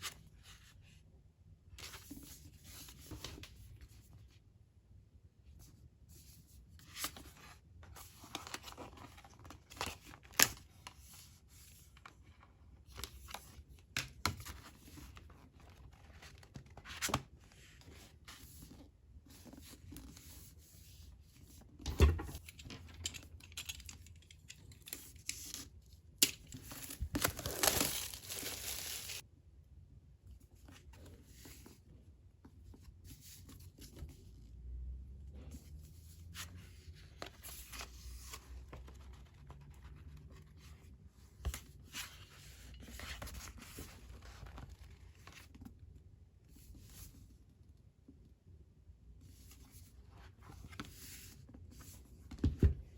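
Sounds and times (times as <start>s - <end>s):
packaging tearing and crinkling: 26.6s - 29.2s.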